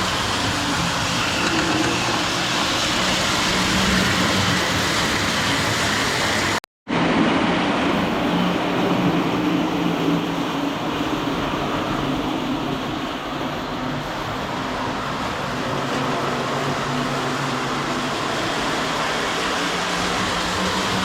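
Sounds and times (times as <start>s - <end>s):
toy train running on track: 0.0s - 6.6s, 15.9s - 21.0s.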